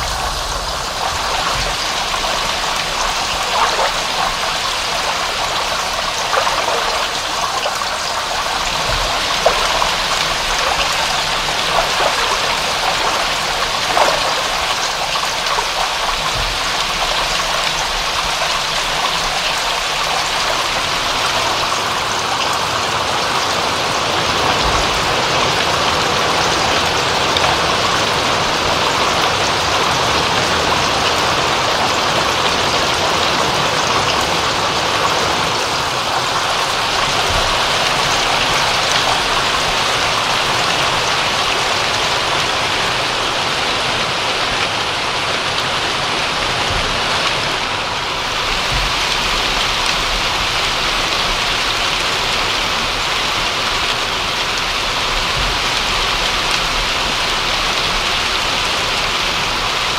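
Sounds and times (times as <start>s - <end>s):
water trickling: 0.0s - 22.5s
loud water drips: 0.0s - 30.0s
rain pattering: 0.0s - 59.9s.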